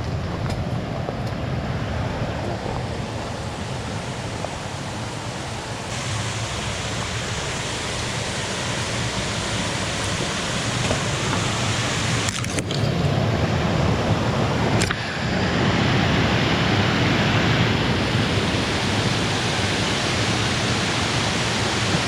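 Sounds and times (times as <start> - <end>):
creek water pouring into pool: 3.0 - 13.1, 18.4 - 22.0.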